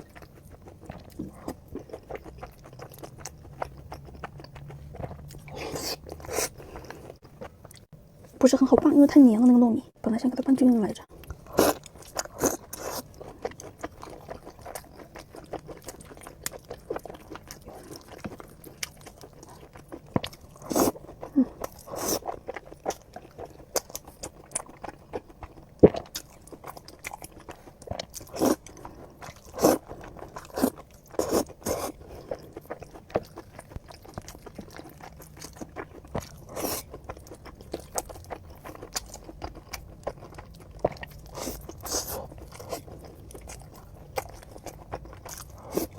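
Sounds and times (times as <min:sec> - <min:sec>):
chewing and mouth smacks: 0:21.6 - 0:45.9.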